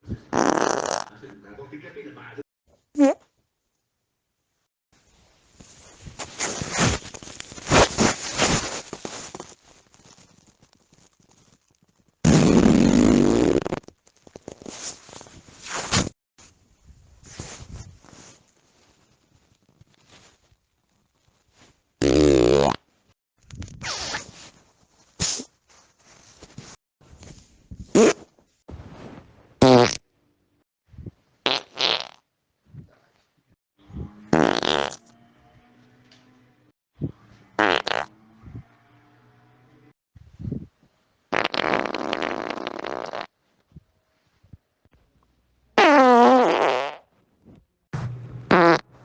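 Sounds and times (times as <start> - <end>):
loud buzzy fart: 0.3 - 1.1, 7.7 - 8.7, 12.2 - 13.9, 22.0 - 22.9, 27.9 - 28.3, 29.6 - 30.0, 31.4 - 32.2, 33.9 - 35.1, 37.6 - 38.1, 41.3 - 43.4, 45.8 - 47.1, 48.0 - 49.0.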